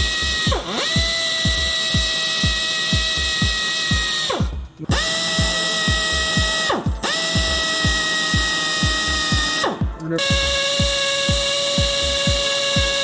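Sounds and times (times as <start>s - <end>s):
background music with steady beat: 0.0s - 13.0s
electric drill running: 0.0s - 13.0s.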